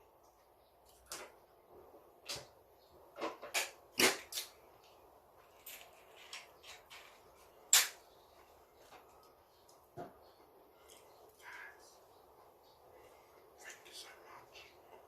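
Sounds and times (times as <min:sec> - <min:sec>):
close-miked eating clicks and smacks: 0:10.8 - 0:11.6.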